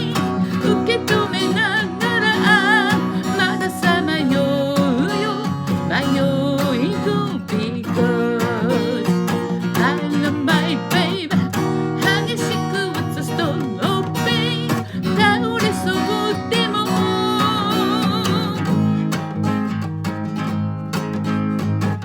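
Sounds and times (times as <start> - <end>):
person singing: 0.0 - 18.8
acoustic guitar strummed: 0.0 - 22.0.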